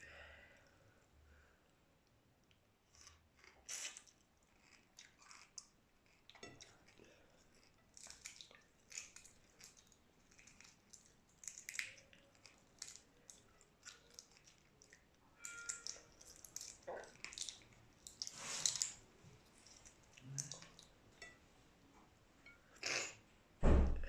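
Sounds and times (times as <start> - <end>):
person chewing food: 2.8 - 21.3.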